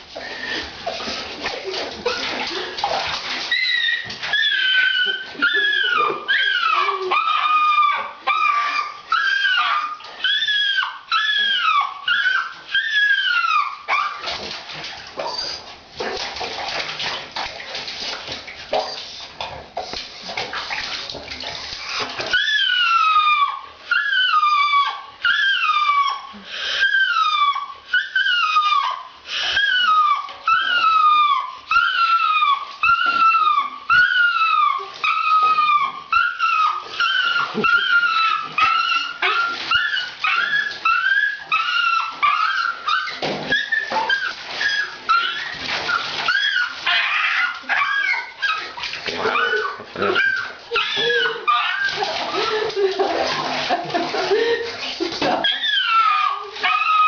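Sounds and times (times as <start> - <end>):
splashing running water: 0.0 - 57.0
dog crying: 3.2 - 14.3, 21.9 - 54.6, 55.4 - 57.0.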